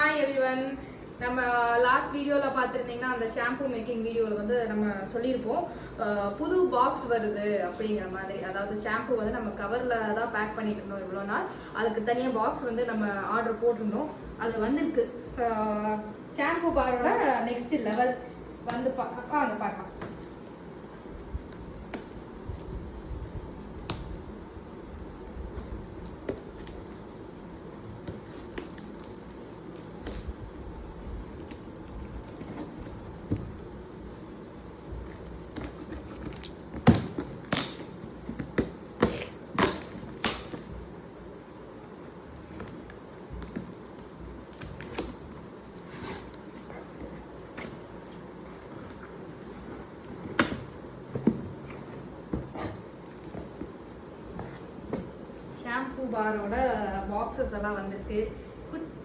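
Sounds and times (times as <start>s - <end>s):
cardboard boxes rustling: 42.4s - 55.6s.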